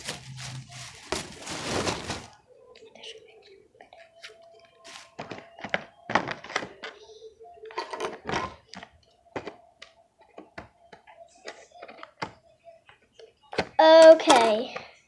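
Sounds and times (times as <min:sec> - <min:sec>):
plastic packaging crinkling: 0:00.0 - 0:02.4, 0:04.9 - 0:05.4.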